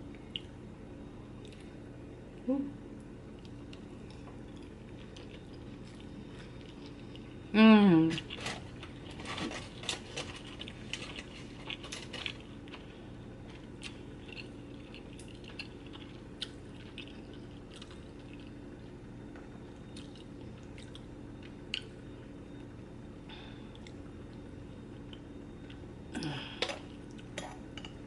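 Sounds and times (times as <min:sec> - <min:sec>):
person chewing food: 0:03.2 - 0:07.5, 0:08.2 - 0:19.0, 0:19.8 - 0:22.7.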